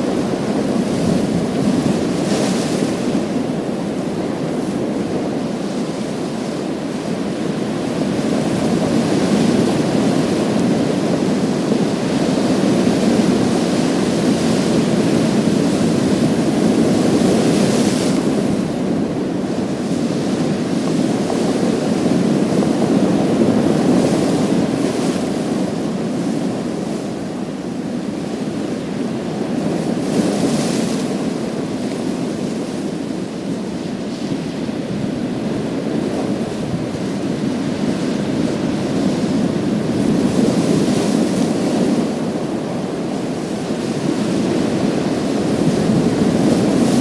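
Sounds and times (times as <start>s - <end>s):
waves breaking on pebble beach: 43.6s - 47.0s.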